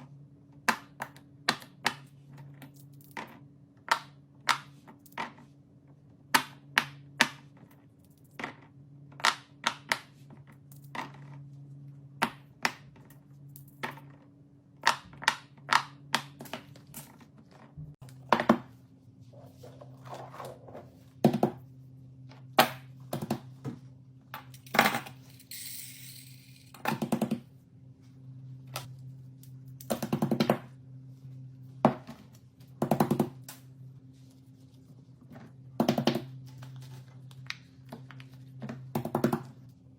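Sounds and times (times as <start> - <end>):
steady low hum: 10.4 - 39.9.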